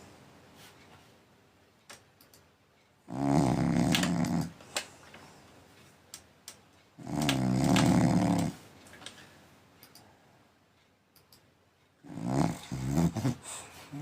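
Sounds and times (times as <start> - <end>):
dog snoring: 3.1 - 4.6, 7.0 - 8.6, 12.0 - 14.0.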